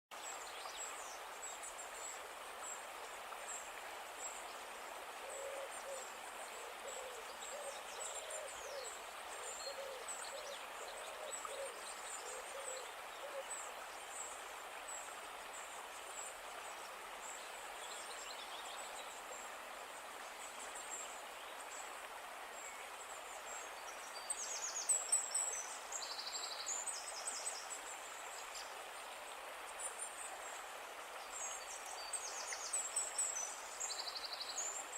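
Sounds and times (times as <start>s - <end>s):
river flowing: 0.1s - 34.9s
low repeated bird calls: 5.2s - 13.8s.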